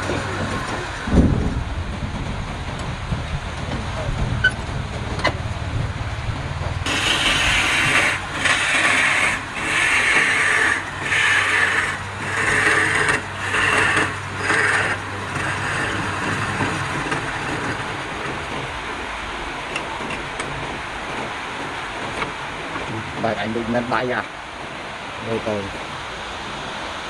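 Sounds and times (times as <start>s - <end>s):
wood lathe running: 0.0s - 1.4s, 6.9s - 18.6s
tool scraping spinning wood: 6.9s - 18.7s.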